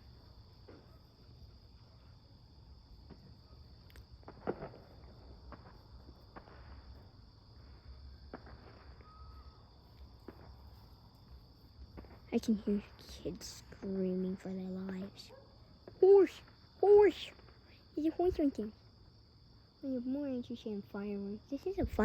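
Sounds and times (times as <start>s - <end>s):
crickets chirring: 0.0s - 22.0s
distant fireworks bangs: 0.6s - 1.1s, 3.0s - 10.8s, 11.9s - 13.1s.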